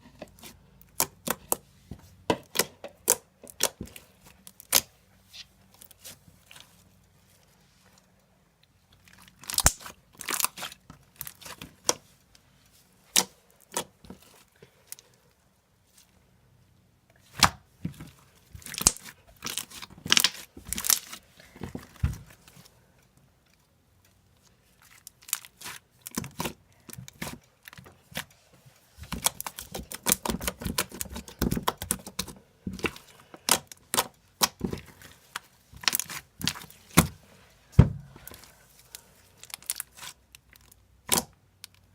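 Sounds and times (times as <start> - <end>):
slime squished by hand: 9.0 - 12.1, 24.7 - 28.3, 29.0 - 37.2, 38.0 - 40.4.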